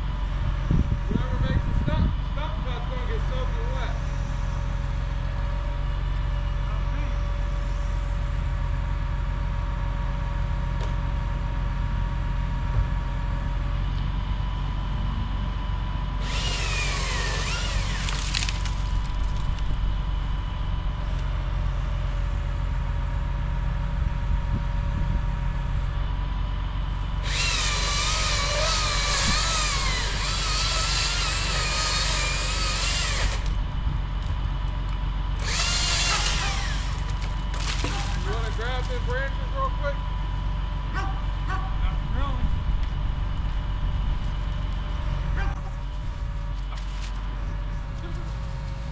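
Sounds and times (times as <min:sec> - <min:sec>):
low engine hum: 0:00.0 - 0:48.9
chainsaw cutting into tree: 0:16.2 - 0:19.4, 0:27.2 - 0:33.6, 0:35.4 - 0:38.7.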